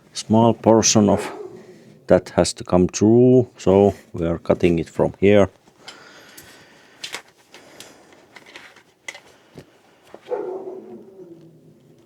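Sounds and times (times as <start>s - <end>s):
dog whining: 10.3s - 12.0s.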